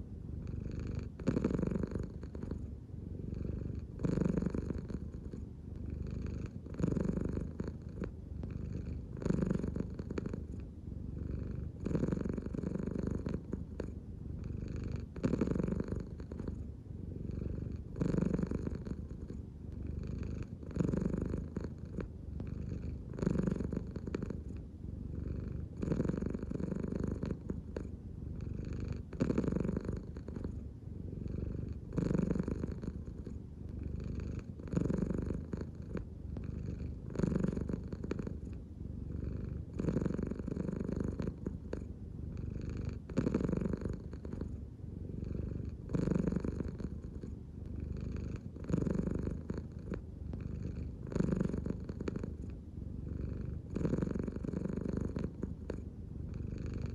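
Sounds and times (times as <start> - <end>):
cat purring: 0.0 - 56.9.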